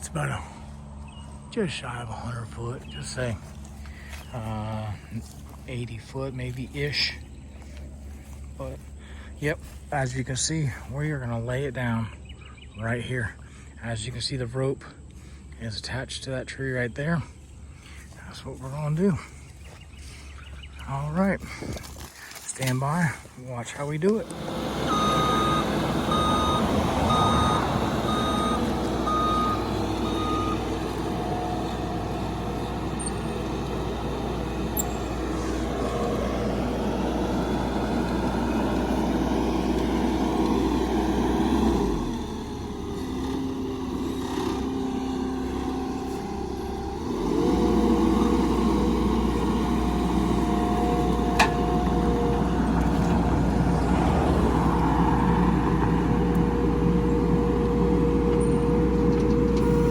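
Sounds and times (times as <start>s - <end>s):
truck engine running: 0.0s - 59.9s
backup alarm beeping: 24.3s - 35.4s.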